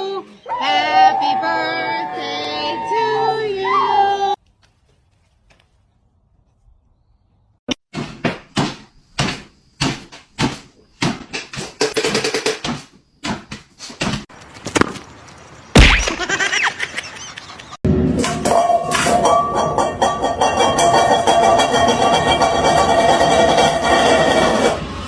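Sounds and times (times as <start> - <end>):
sharp knocks and bangs: 7.7 - 15.0, 17.9 - 24.9.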